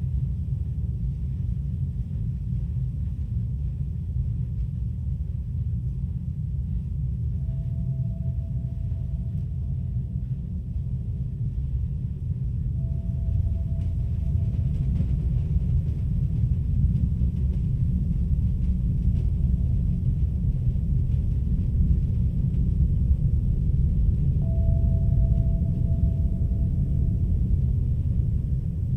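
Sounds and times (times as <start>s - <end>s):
low rumbling drone: 0.0s - 28.9s
thin held tone: 12.8s - 15.8s, 24.4s - 28.9s.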